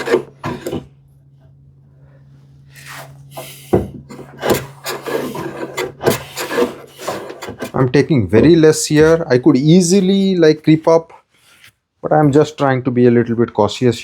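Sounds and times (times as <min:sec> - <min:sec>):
hand plane shaving wood: 0:00.0 - 0:00.9, 0:02.7 - 0:10.3.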